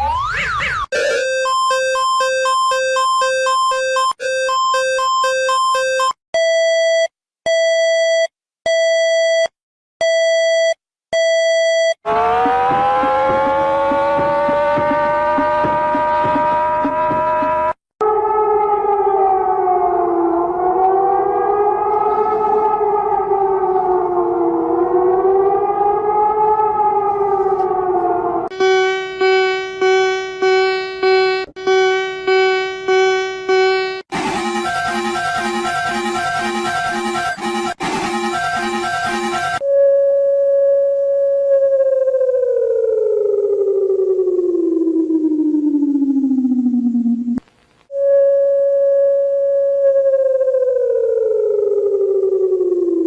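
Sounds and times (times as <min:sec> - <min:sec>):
rising siren-like tone: 0:00.0 - 0:06.1, 0:12.1 - 0:47.4, 0:48.0 - 0:53.0
long buzzy beeps: 0:00.5 - 0:06.6, 0:28.5 - 0:39.6
two-pitch alarm beeping: 0:00.9 - 0:16.4, 0:28.6 - 0:39.6.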